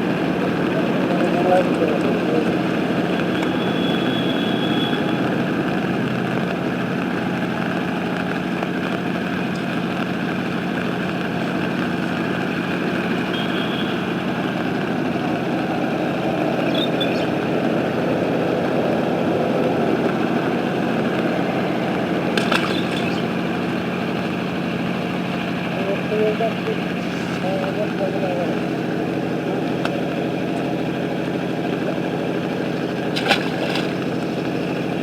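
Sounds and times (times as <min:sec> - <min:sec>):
engine running steadily: 0:00.0 - 0:35.0
high chirps: 0:22.4 - 0:23.4.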